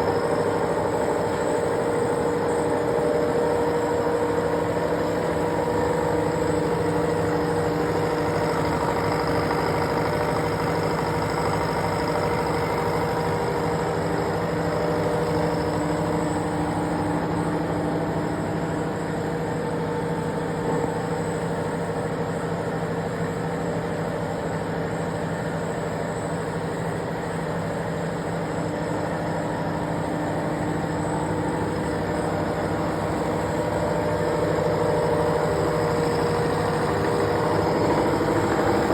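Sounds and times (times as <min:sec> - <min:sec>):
milling machine humming and whining: 0:00.0 - 0:38.9.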